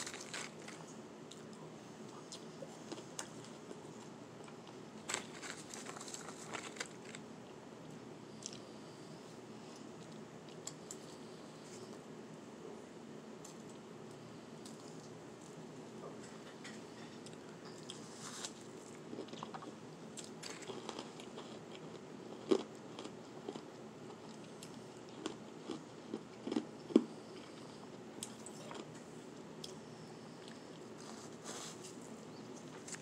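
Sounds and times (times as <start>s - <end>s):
shaved ice being chewed: 0.0s - 7.2s, 16.6s - 29.0s.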